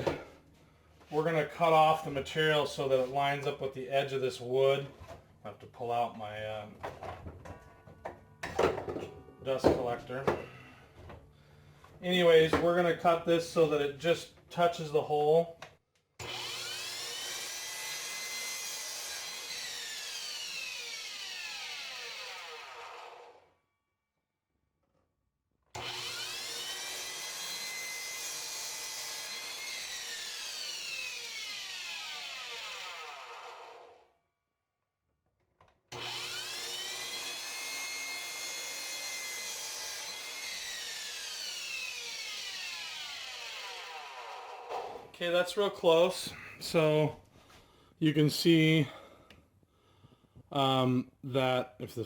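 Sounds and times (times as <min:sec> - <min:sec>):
power saw cutting wood: 0:16.2 - 0:23.6, 0:25.8 - 0:34.1, 0:35.9 - 0:47.0
dust collector running: 0:36.0 - 0:44.7.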